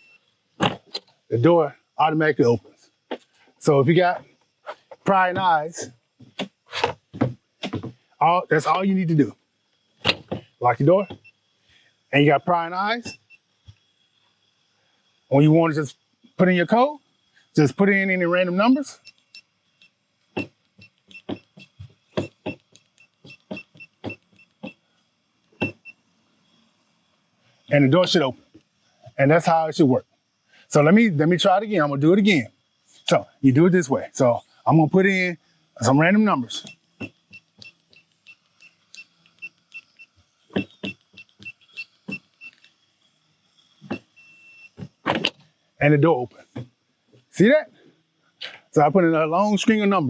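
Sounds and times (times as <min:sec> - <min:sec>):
keypad beeps: 0:20.4 - 0:24.8.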